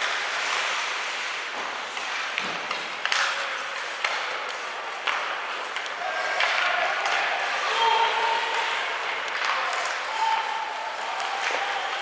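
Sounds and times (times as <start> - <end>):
skates hissing on ice: 0.0 - 4.0
hockey sticks clacking on puck: 0.0 - 12.0
arena noise: 3.0 - 12.0.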